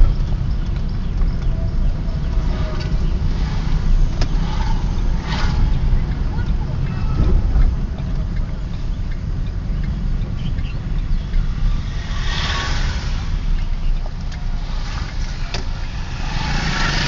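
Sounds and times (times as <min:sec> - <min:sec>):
vehicle driving rumble: 0:00.0 - 0:17.0
hissing swell: 0:11.4 - 0:17.0.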